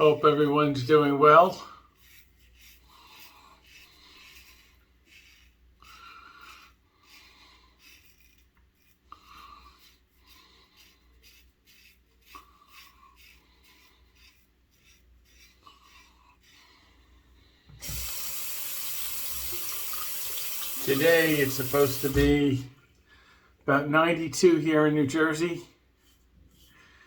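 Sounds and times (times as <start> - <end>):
razor scraping stubble: 0.2 - 16.9, 17.8 - 22.5
tap water running into sink: 17.8 - 22.4.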